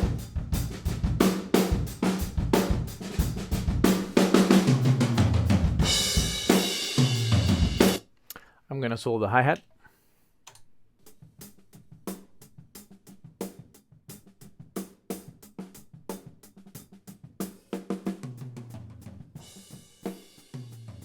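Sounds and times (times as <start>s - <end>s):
kick drum: 0.0s - 4.0s
snare drum: 0.0s - 8.0s, 11.4s - 21.0s.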